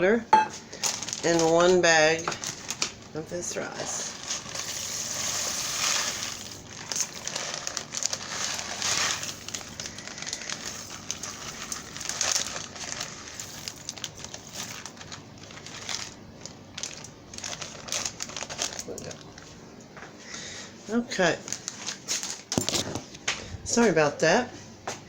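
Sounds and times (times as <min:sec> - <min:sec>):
plastic bag crinkling: 0:00.6 - 0:19.6, 0:21.2 - 0:23.0
rice grains clicking: 0:04.2 - 0:16.2.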